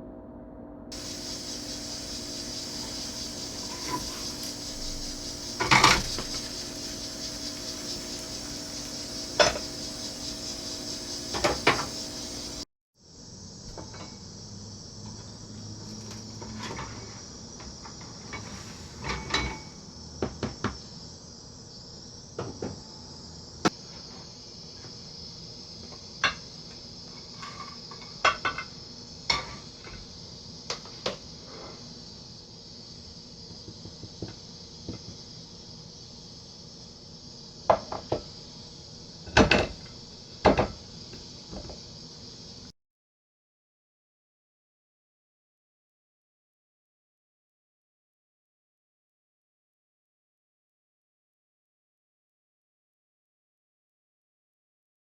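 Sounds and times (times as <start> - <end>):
steady high hiss: 0.9 - 12.6.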